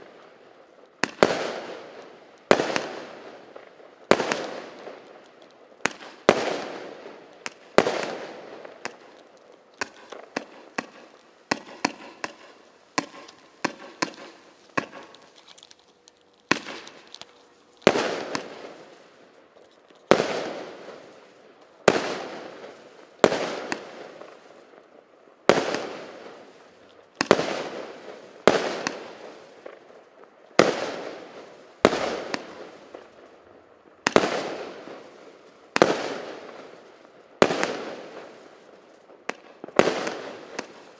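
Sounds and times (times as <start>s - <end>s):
firework bangs and crackles: 0.0s - 40.9s
firework shell bursts echoing: 9.8s - 15.6s.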